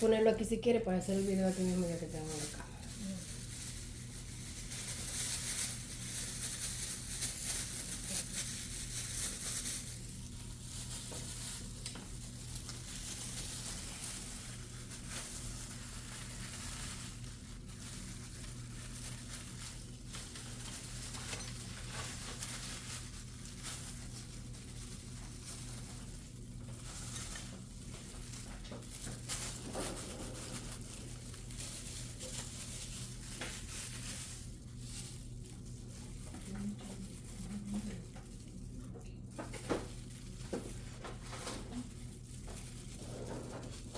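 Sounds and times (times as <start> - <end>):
utensil tapping and scraping: 9.3 - 18.6, 25.0 - 43.9.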